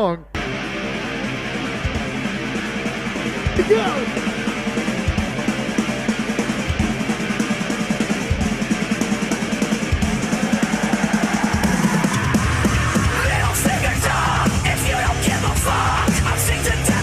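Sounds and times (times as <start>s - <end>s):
bass-heavy electronic dance music: 3.5s - 4.2s, 9.9s - 17.0s.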